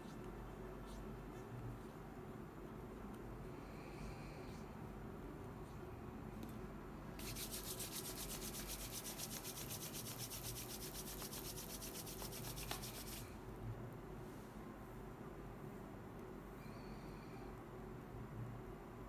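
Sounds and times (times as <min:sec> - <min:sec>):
scratchy rustle in ear: 0:07.2 - 0:13.3.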